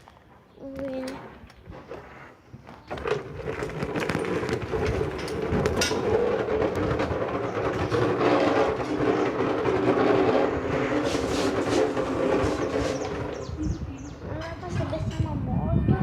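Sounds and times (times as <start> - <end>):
bicycle spokes rattling a bottle: 3.0 - 13.8.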